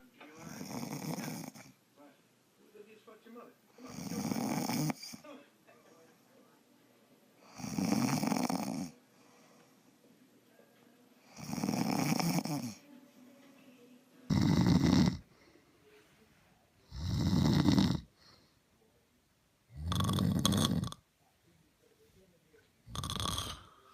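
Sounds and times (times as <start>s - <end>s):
loud snoring: 0.5s - 1.7s, 3.8s - 5.2s, 7.5s - 9.0s, 11.3s - 12.8s, 14.3s - 15.3s, 16.9s - 18.1s, 19.7s - 21.0s, 22.9s - 23.9s.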